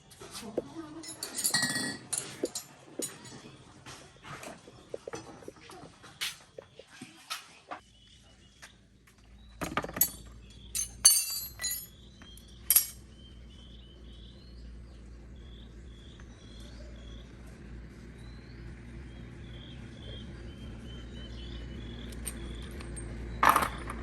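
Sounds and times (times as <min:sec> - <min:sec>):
metal tools clinking: 0:00.9 - 0:03.5, 0:09.6 - 0:13.0, 0:22.1 - 0:24.0
low hum: 0:09.4 - 0:24.0.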